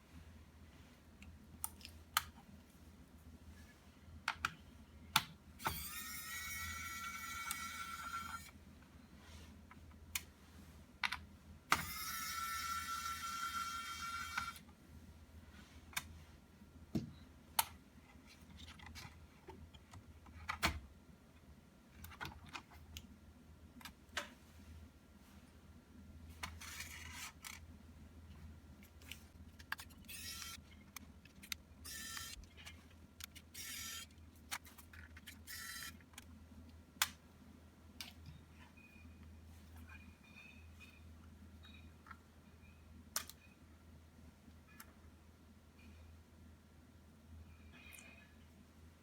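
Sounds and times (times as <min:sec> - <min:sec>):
small electric motor whining: 0:05.6 - 0:08.5, 0:11.8 - 0:14.6, 0:30.1 - 0:30.6, 0:31.8 - 0:32.4, 0:33.6 - 0:34.0, 0:35.5 - 0:36.0.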